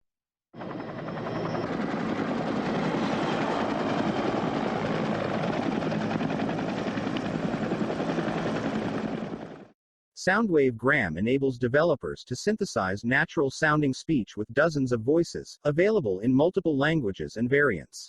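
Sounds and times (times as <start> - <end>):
helicopter flying: 0.5 - 9.8.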